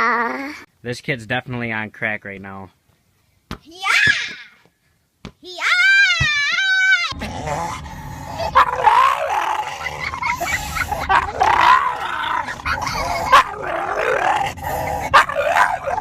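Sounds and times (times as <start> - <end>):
dog vocalizing: 8.4 - 16.0.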